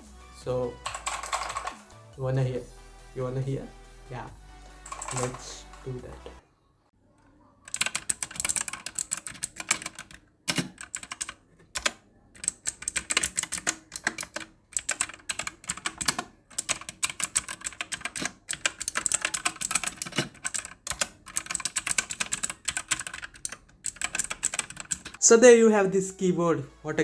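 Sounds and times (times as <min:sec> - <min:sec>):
clicky mechanical keyboard typing: 0:07.7 - 0:25.2.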